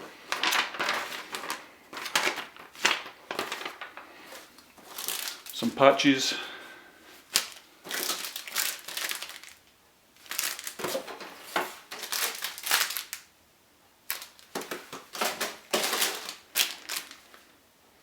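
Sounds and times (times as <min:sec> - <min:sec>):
packaging rustling and crinkling: 0:00.0 - 0:06.2, 0:07.1 - 0:13.3, 0:14.1 - 0:17.6.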